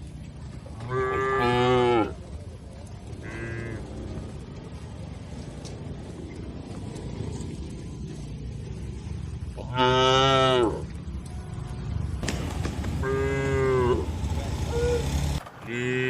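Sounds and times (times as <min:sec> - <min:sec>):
cattle mooing: 0:00.8 - 0:02.2, 0:09.6 - 0:10.8, 0:13.0 - 0:14.1.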